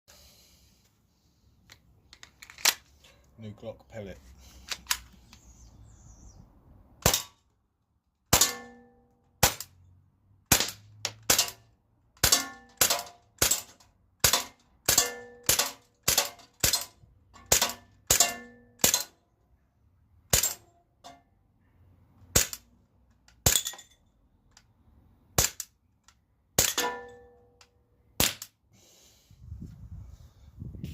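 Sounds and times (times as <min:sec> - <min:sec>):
pellet pistol shots: 0:07.0 - 0:07.4, 0:09.4 - 0:09.7, 0:10.5 - 0:11.6, 0:12.2 - 0:16.9, 0:28.2 - 0:28.5.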